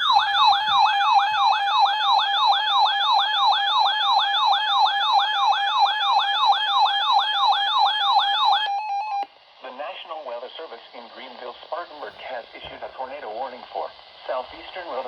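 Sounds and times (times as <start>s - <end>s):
electronic siren alarm: 0.0s - 9.3s.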